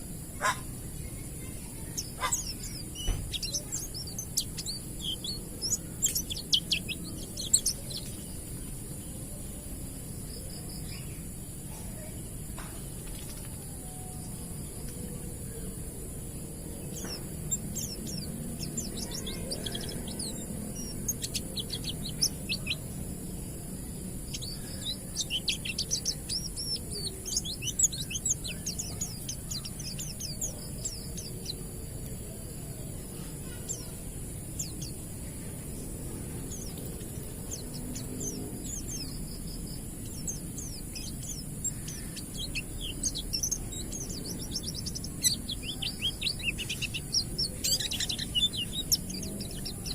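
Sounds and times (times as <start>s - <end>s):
bird twittering song: 0.0s - 49.9s
steady high hiss: 0.0s - 49.9s.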